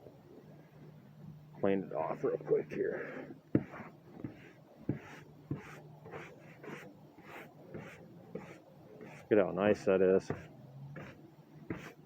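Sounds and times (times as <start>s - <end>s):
brush scratching on wood board: 3.0s - 12.0s.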